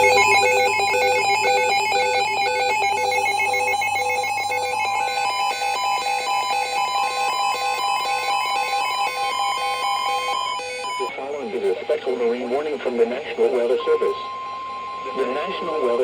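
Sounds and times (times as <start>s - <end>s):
electronic alert tones beeping: 0.0s - 5.4s
low pulsing tone: 0.0s - 5.8s
steady high tone: 0.0s - 16.0s.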